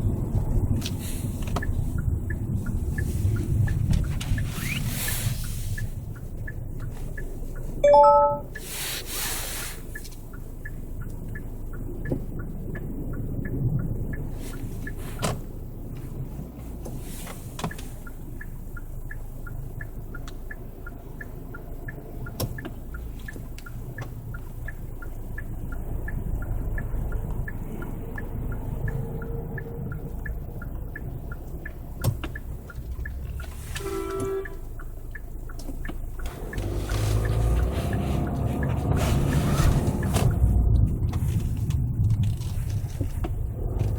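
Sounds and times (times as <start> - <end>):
light ticks: 0.0 - 7.8, 8.4 - 43.9
car road noise: 0.0 - 43.9
creaking from car underside: 35.6 - 43.9.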